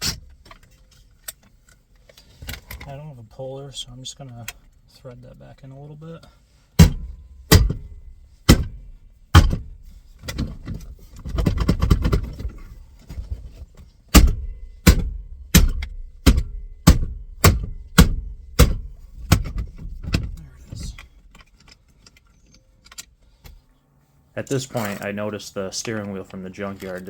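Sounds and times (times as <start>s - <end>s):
steering wheel rattling: 0.0s - 23.6s
sharp knocks on steering wheel: 6.8s - 9.7s, 14.1s - 20.5s.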